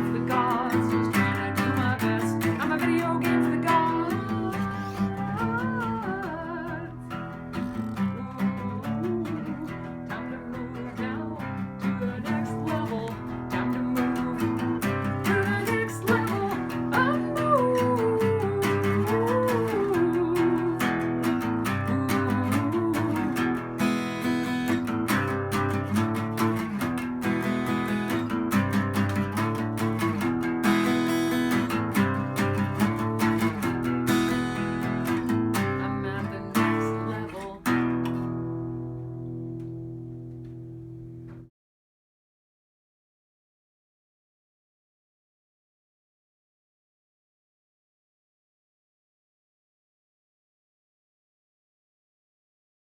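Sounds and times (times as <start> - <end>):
acoustic guitar strumming: 0.0 - 41.5.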